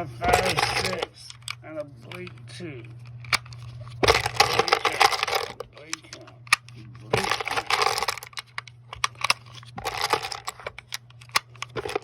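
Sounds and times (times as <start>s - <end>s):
faint low hum: 0.0s - 12.0s
brass cartridges rattling: 0.3s - 1.4s, 3.4s - 6.3s, 7.1s - 8.4s, 9.2s - 10.8s.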